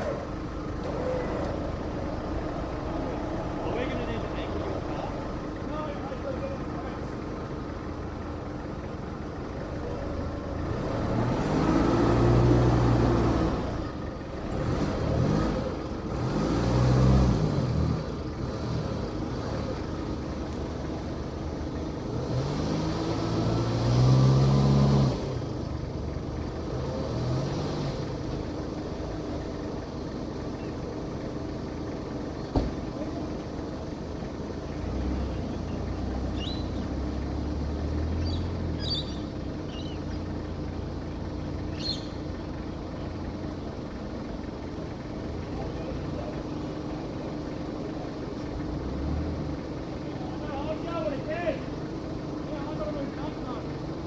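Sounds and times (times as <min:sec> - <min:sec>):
engine revving: 0:09.4 - 0:29.4, 0:32.6 - 0:44.0, 0:44.6 - 0:54.0.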